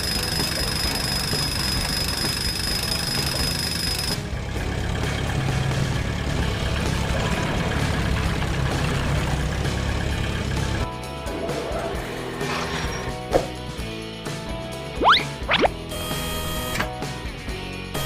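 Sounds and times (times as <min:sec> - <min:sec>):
heavy engine rumbling: 0:00.0 - 0:13.3.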